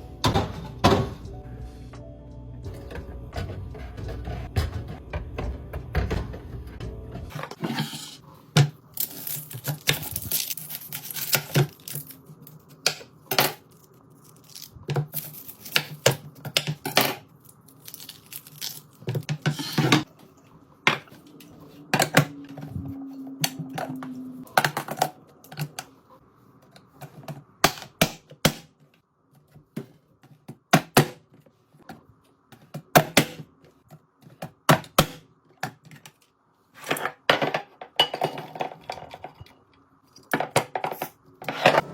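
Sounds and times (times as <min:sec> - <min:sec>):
packaging rustling and tearing: 0:09.0 - 0:12.6.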